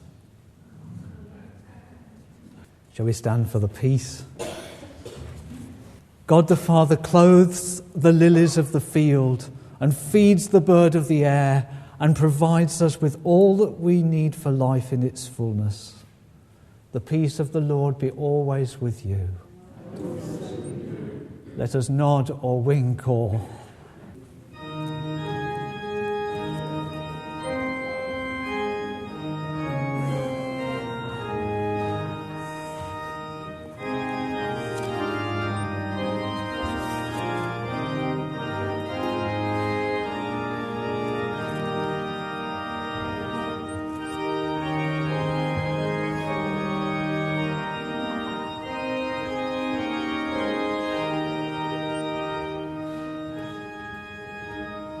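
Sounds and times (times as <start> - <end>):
church organ playing chords: 6.2 - 16.1, 24.5 - 55.0.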